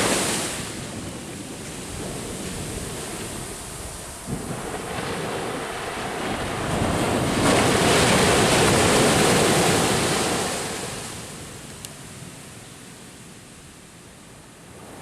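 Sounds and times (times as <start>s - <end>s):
ocean wave breaking on beach: 0.0s - 11.7s.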